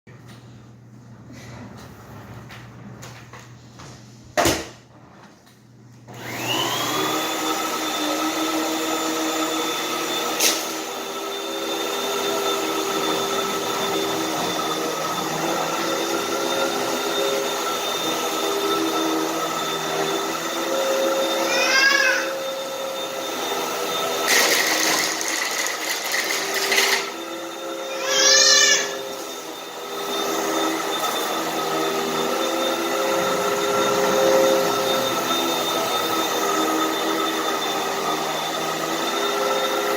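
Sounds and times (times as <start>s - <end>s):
vacuum cleaner motor whining: 6.0s - 39.9s.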